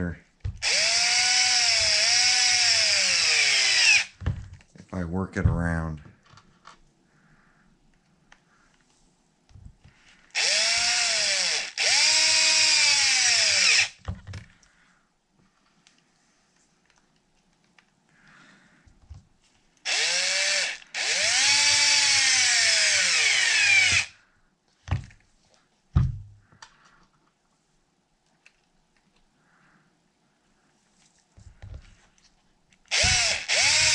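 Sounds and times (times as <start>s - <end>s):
power drill driving screws: 0.6s - 4.2s, 10.3s - 14.0s, 19.8s - 24.1s, 32.9s - 33.9s.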